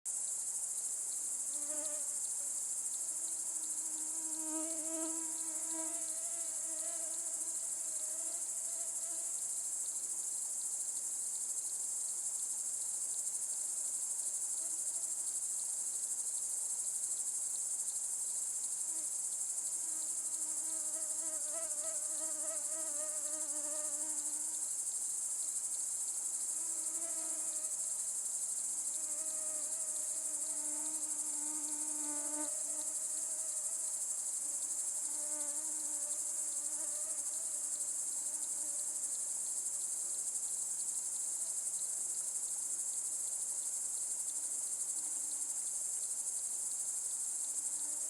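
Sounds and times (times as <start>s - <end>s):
chirping insects chorus: 0.1s - 48.0s
flying insect buzzing: 1.3s - 9.8s, 19.7s - 24.9s, 26.2s - 39.2s.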